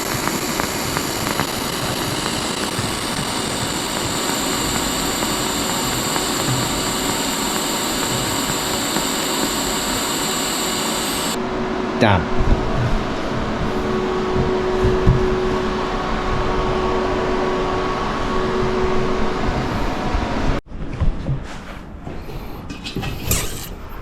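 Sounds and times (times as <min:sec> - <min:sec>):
welding arc hissing and buzzing: 0:00.0 - 0:11.4.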